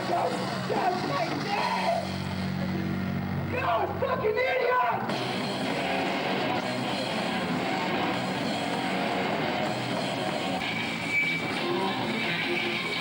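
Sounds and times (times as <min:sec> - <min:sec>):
live rock band playing: 0:05.1 - 0:13.0.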